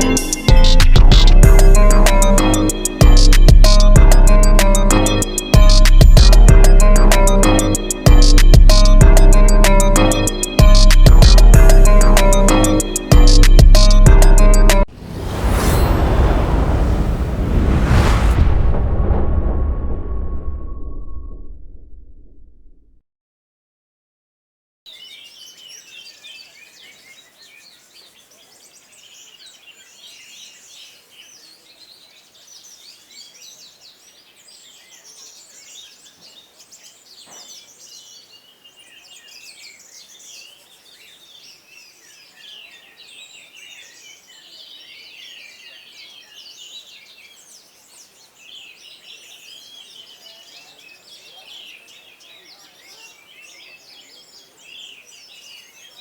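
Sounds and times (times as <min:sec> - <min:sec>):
thrushes singing: 0:00.0 - 0:17.0.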